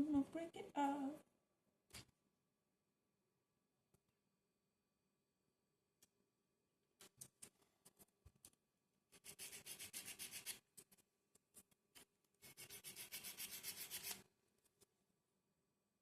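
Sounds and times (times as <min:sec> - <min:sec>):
hand sanding plywood: 0:12.4 - 0:14.2.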